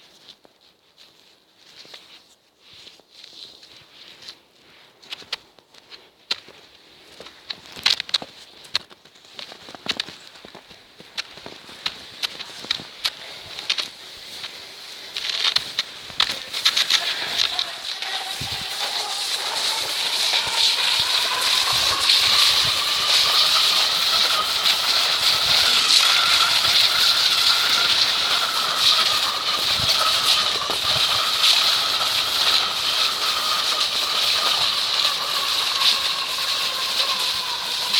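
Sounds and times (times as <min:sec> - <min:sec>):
skis hissing over snow: 0:08.2 - 0:37.9
wind whistling: 0:14.2 - 0:37.9.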